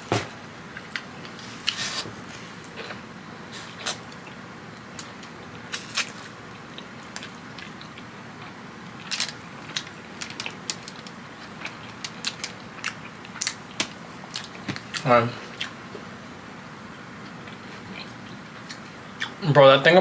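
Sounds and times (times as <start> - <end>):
crunching and chewing: 0.7 - 16.1.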